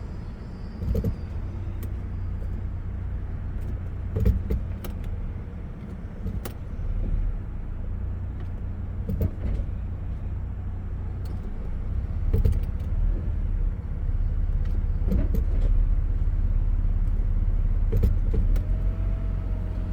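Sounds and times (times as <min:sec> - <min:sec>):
transmission shifting clunk: 0:03.5 - 0:05.2, 0:08.4 - 0:09.8, 0:11.2 - 0:13.2, 0:14.5 - 0:16.3, 0:17.0 - 0:19.9.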